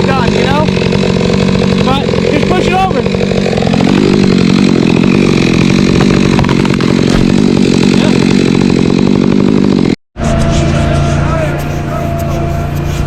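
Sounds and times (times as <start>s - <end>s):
chainsaw engine running: 0.0s - 13.0s.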